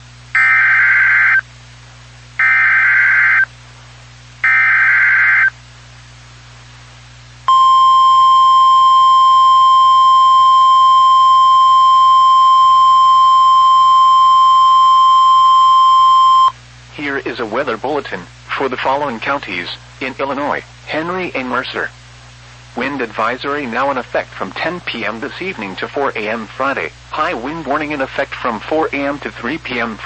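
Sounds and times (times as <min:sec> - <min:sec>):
steady warning alarm tone: 0:00.4 - 0:01.4, 0:02.4 - 0:03.5, 0:04.4 - 0:05.5, 0:07.5 - 0:16.5.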